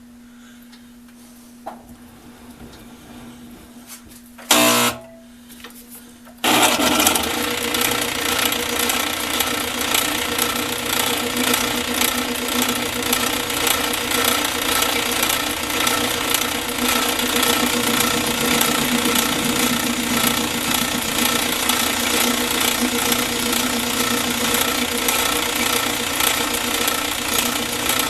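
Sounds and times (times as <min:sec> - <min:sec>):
faint steady hum: 0:00.0 - 0:06.5, 0:12.4 - 0:28.0
electric motor whirring: 0:06.5 - 0:28.0.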